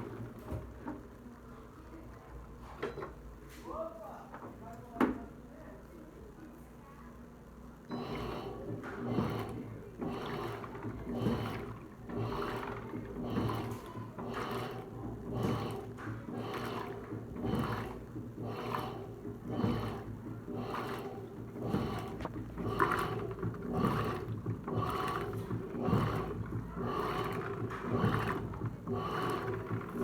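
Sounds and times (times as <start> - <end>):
washing machine water sloshing: 8.0 - 30.0.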